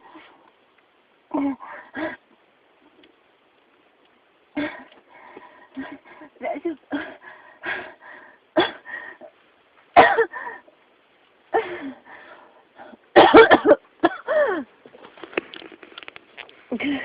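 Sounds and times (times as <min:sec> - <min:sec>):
person coughing: 0:10.0 - 0:10.6, 0:13.2 - 0:14.7.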